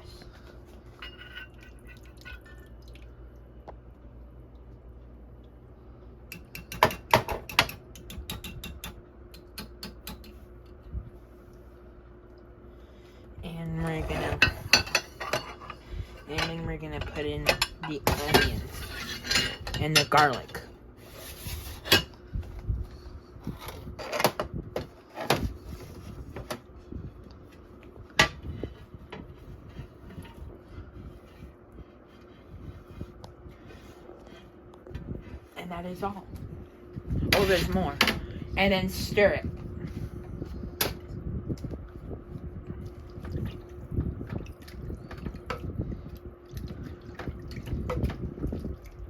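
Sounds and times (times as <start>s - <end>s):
utensils clattering against pot: 1.0s - 2.6s, 14.0s - 20.7s, 21.8s - 22.2s.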